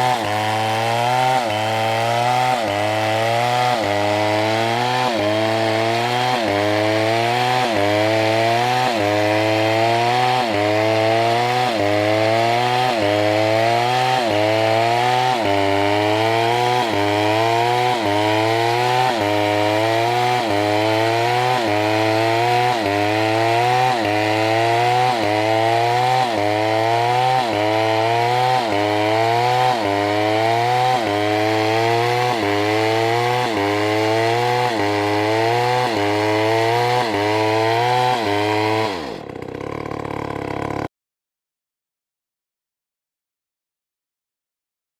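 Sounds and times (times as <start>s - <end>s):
chainsaw engine revving: 0.0s - 40.9s.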